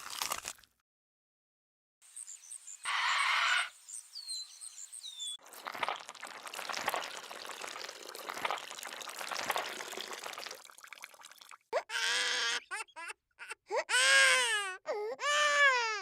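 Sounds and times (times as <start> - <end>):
water pouring and splashing: 0.0 - 0.7, 5.4 - 11.9.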